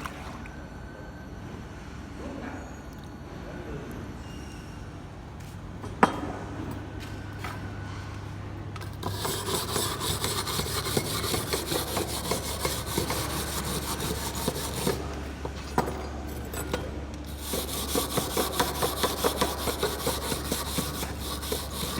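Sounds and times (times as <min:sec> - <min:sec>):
hand tool scraping on metal: 0:08.8 - 0:15.8, 0:17.3 - 0:21.9.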